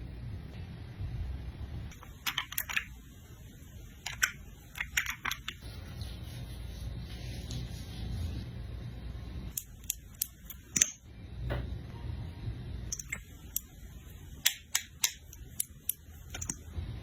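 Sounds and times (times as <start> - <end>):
low steady rumble: 0.0 - 2.0, 11.0 - 14.4, 15.3 - 17.0.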